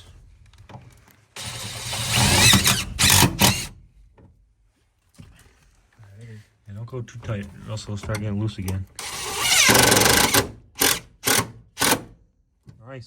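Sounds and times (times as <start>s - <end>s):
cordless impact driver running: 1.4s - 3.7s, 9.0s - 12.1s.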